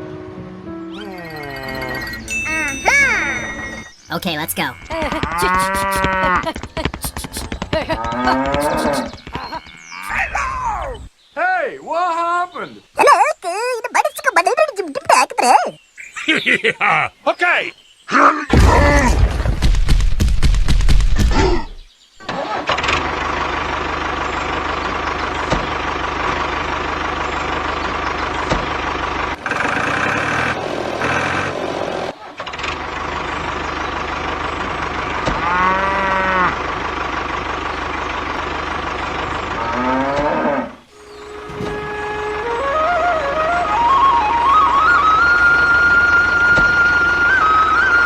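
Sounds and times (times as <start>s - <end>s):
cow mooing: 4.8s - 6.5s, 8.0s - 10.2s, 35.4s - 36.6s, 39.6s - 40.8s
engine-like drone: 22.7s - 48.0s.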